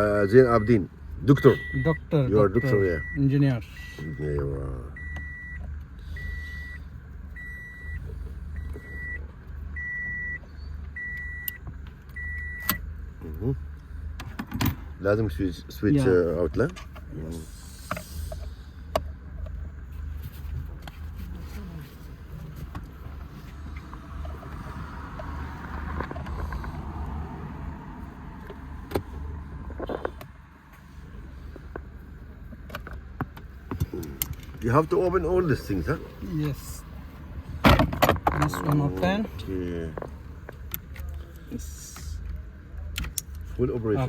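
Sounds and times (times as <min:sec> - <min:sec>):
low steady rumble: 0:00.0 - 0:44.0
high electronic warning beep: 0:00.4 - 0:06.8, 0:09.8 - 0:10.4.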